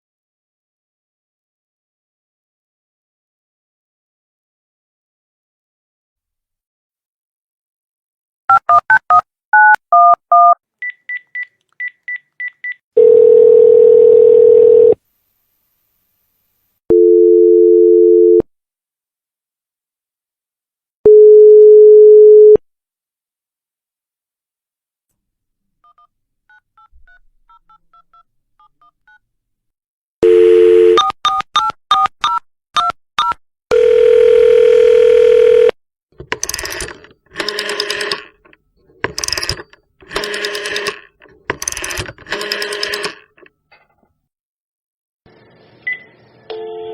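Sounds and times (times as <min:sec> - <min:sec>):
touch-tone dialling beeps: 0:08.5 - 0:15.0, 0:16.9 - 0:18.4, 0:21.1 - 0:22.6
steady telephone line tones: 0:13.0 - 0:15.0.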